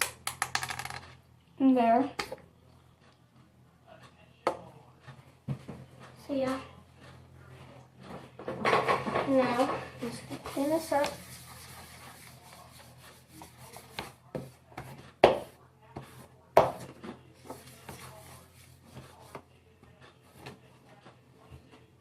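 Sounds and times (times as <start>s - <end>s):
rubbing and wiping on table: 9.4s - 15.2s, 17.4s - 19.5s.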